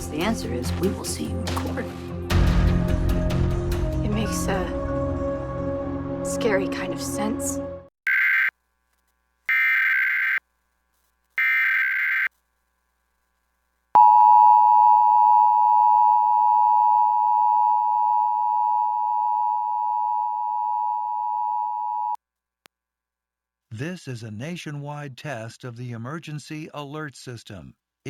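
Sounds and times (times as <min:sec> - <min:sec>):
screeching digital data burst: 0:11.4 - 0:12.3
two-tone alarm tone: 0:11.4 - 0:12.3, 0:14.0 - 0:22.2.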